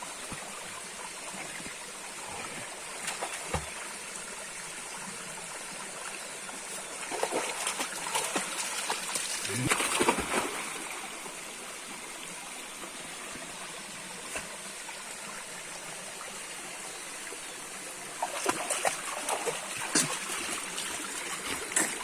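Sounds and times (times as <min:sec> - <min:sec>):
water flowing: 0:00.0 - 0:22.0
water splashing: 0:07.0 - 0:11.1, 0:18.2 - 0:22.0.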